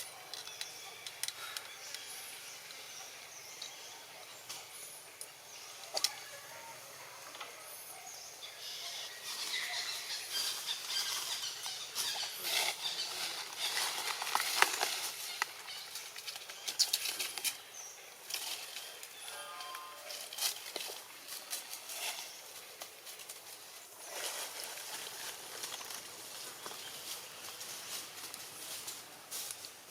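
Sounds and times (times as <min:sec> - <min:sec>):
dry rustling and crackling: 0:09.3 - 0:29.8.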